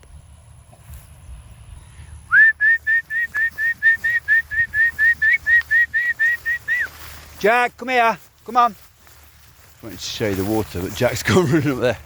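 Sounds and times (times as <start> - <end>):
person whistling short notes: 2.3 - 6.9.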